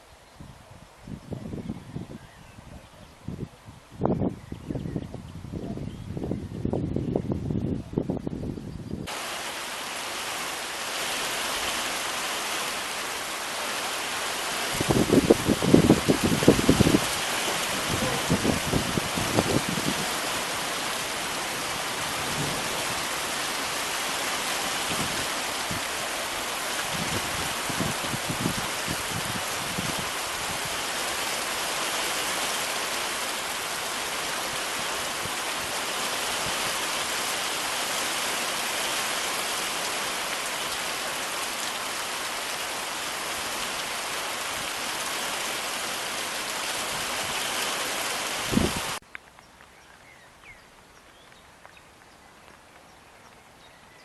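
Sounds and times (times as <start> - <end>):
heavy rain falling: 9.1 - 49.0.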